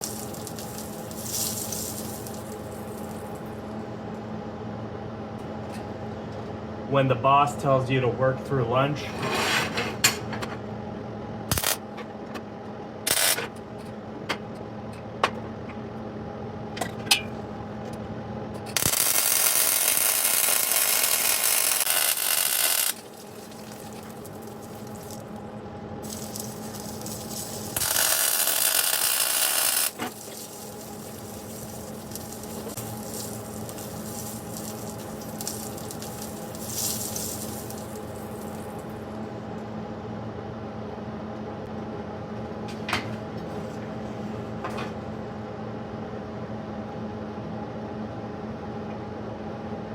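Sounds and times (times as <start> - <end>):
welding arc hissing crackle: 0.0 - 3.7, 11.5 - 11.8, 13.1 - 13.4, 18.7 - 39.2
steady hum: 0.0 - 49.9.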